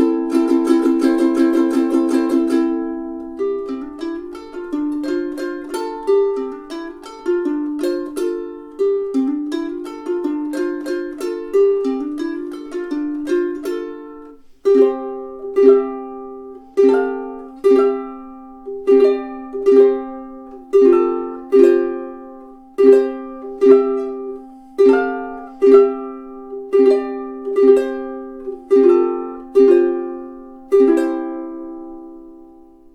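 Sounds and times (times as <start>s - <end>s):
ukulele picked notes and chords: 0.0s - 32.9s.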